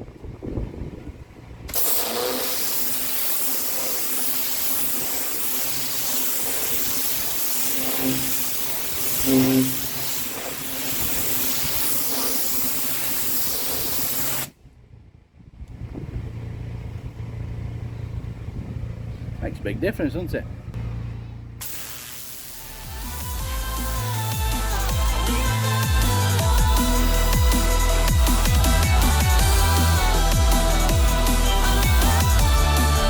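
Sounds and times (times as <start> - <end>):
pressure washer spraying concrete: 1.7 - 14.6, 21.6 - 33.0
washer engine humming faintly: 14.6 - 21.6.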